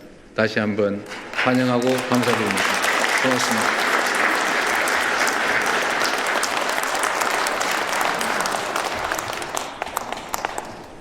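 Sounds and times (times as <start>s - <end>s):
audience applauding: 1.0s - 11.0s.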